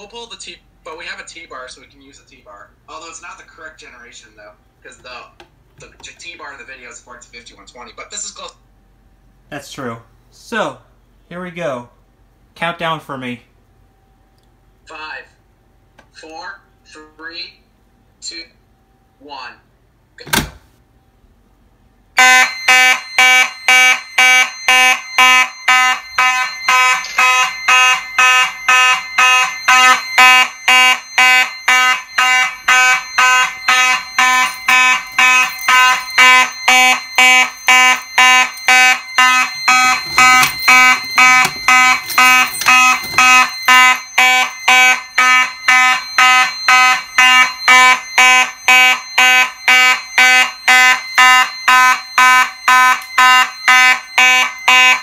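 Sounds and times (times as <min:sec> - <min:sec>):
fire alarm horn pulsing: 0:22.2 - 0:55.0.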